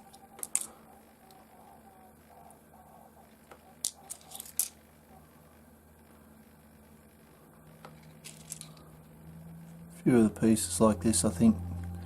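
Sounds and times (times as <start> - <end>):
low steady hum: 0.0 - 12.0
stones clicking together: 0.1 - 0.7, 3.8 - 4.8.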